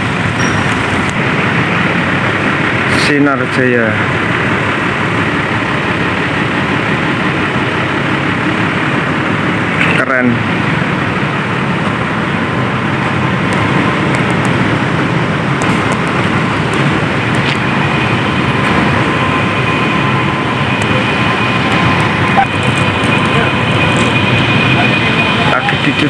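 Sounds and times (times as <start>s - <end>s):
faint high whine: 0.0s - 4.2s, 15.1s - 26.0s
bus diesel engine running: 0.0s - 26.0s.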